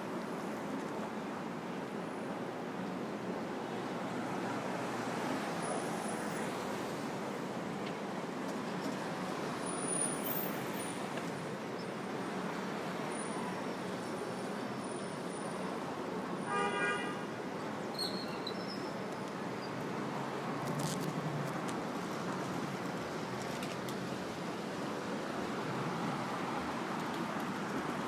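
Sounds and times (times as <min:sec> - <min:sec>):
passing vehicles: 0:00.1 - 0:28.0
vehicle horn honk: 0:16.5 - 0:17.2.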